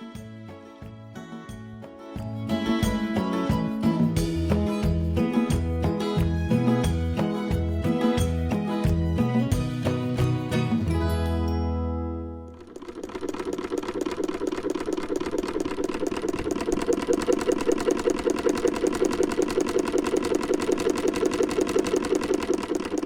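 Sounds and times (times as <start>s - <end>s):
sewing machine running: 12.5s - 23.0s.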